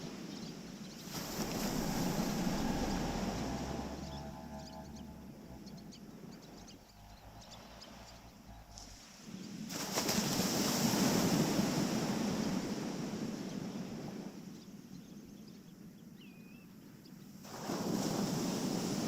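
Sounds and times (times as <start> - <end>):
waves breaking on beach: 0.0 - 6.4, 7.2 - 14.8, 17.3 - 19.0
high gliding chirp: 1.0 - 9.4.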